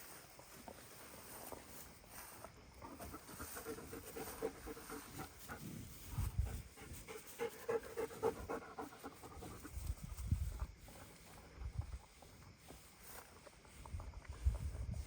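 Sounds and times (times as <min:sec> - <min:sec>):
dog panting rapidly: 0:02.9 - 0:09.9.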